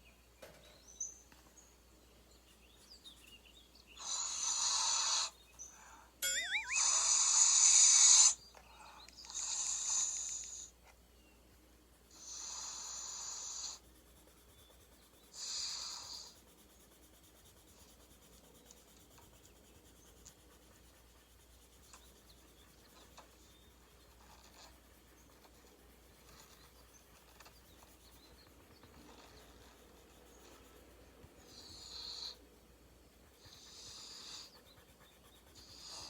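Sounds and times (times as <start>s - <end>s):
pencil scratching on paper: 12.1s - 36.0s.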